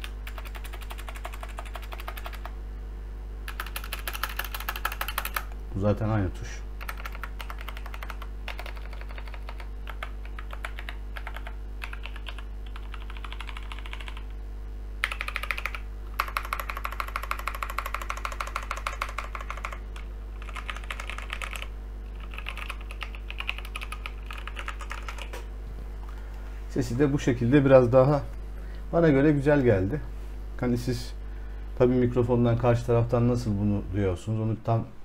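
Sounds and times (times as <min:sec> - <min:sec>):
mechanical keyboard typing: 0:00.0 - 0:02.5, 0:03.5 - 0:05.5, 0:06.8 - 0:14.3, 0:15.0 - 0:25.4.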